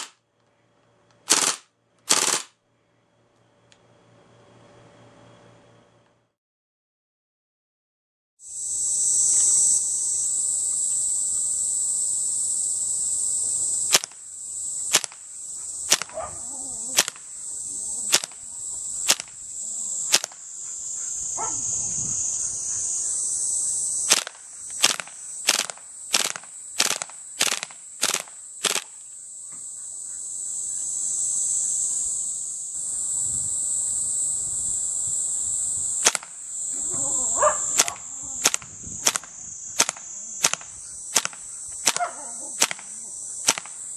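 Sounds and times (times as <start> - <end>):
airsoft gun shots: 1.3 - 2.6, 13.9 - 14.2, 14.9 - 15.2, 15.9 - 16.3, 17.0 - 17.3, 18.1 - 18.4, 19.0 - 19.4, 20.1 - 20.4, 24.1 - 29.0, 36.0 - 36.4, 37.7 - 43.8.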